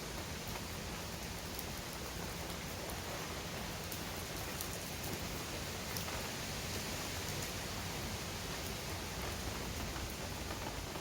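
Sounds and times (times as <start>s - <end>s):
heavy rain on hard surfaces: 0.0s - 11.0s.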